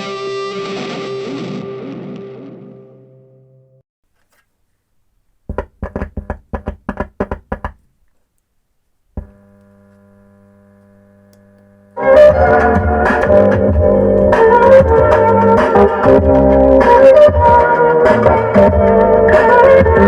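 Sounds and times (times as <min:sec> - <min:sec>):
music through small speaker: 0:12.0 - 0:20.0.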